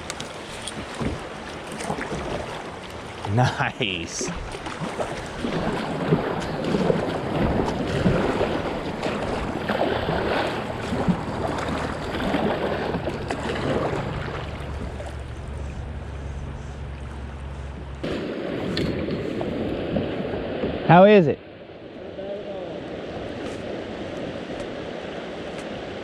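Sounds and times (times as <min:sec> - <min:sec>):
river water rushing and splashing: 0:00.0 - 0:16.2, 0:21.6 - 0:26.0
wind buffeting microphone: 0:04.3 - 0:20.9.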